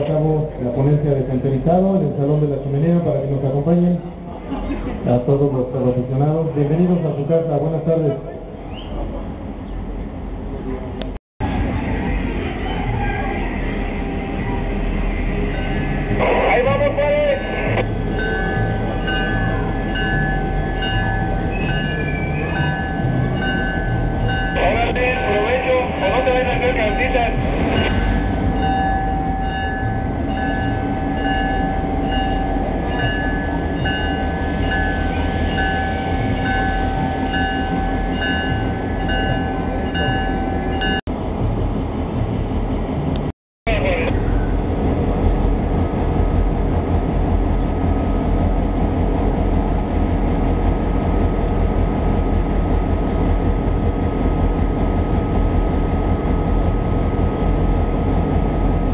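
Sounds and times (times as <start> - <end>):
diesel locomotive engine running: 0.0 - 58.9
locomotive bell ringing: 14.1 - 41.0.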